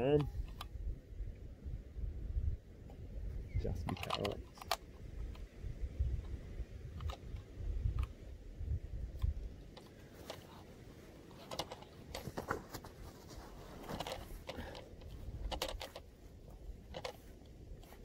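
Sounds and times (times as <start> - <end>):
gear handling clicks and rustles: 3.8 - 5.5, 9.2 - 18.0.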